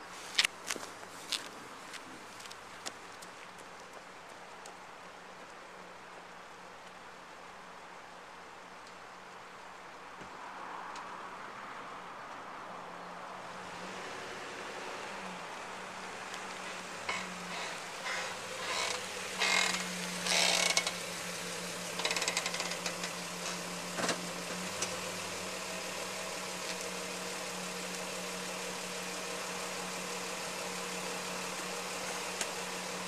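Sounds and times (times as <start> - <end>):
car brakes scraping: 16.5 - 25.1.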